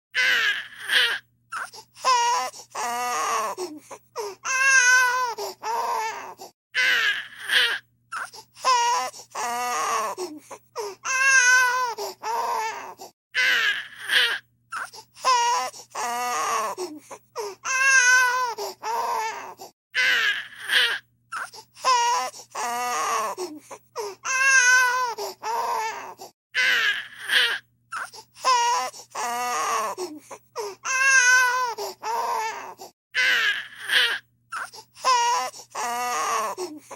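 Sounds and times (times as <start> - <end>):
baby crying: 0.2 - 36.9.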